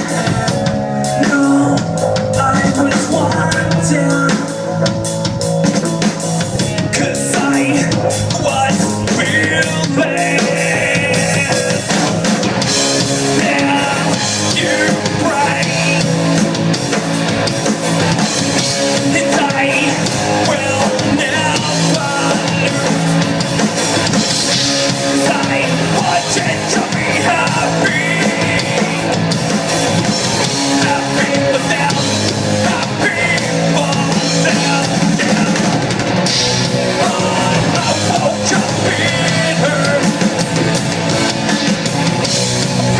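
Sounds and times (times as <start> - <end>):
live rock band playing: 0.0 - 42.9.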